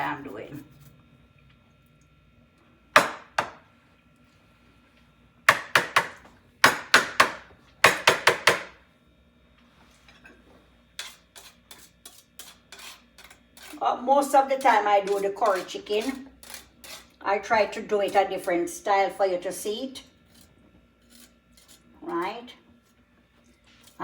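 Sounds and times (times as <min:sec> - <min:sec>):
sharp kitchen knocks: 0:03.0 - 0:03.6, 0:05.5 - 0:08.8.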